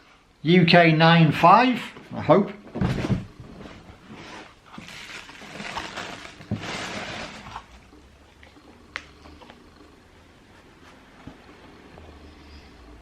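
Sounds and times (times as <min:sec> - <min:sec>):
paper rustling and crinkling: 0:02.8 - 0:07.9.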